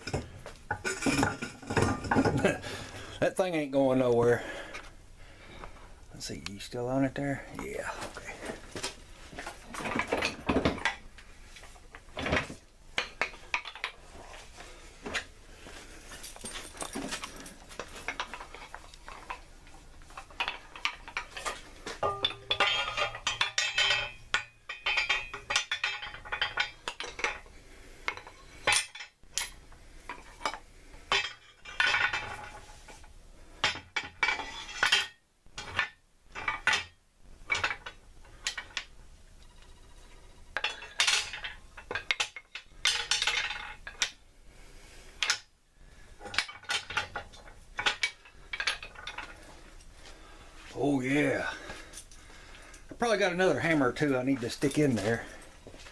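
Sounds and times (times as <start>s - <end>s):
tools clattering against metal: 0.0s - 2.9s, 9.4s - 11.0s, 12.2s - 14.0s, 16.0s - 19.4s, 20.0s - 27.5s, 28.1s - 38.9s, 40.6s - 44.2s, 46.2s - 49.9s, 53.5s - 55.9s.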